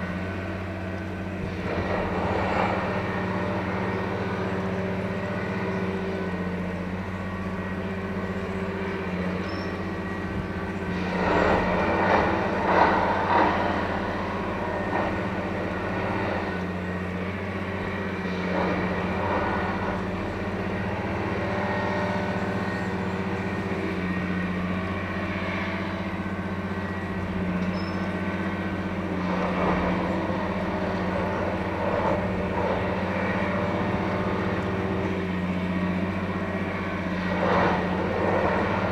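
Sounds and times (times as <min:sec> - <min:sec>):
engine running with low hum: 0:00.0 - 0:38.9.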